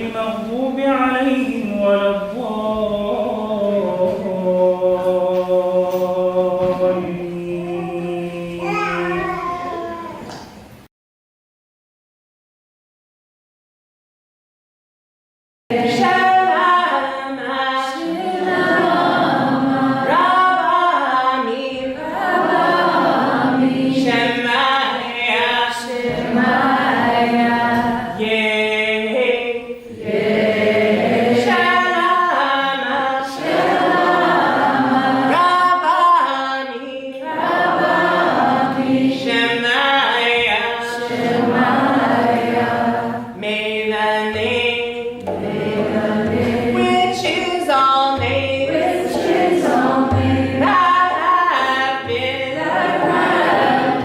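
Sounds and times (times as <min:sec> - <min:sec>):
unaccompanied voices chanting: 0:01.2 - 0:10.0, 0:15.7 - 0:35.9, 0:36.8 - 0:43.6, 0:45.1 - 0:54.0.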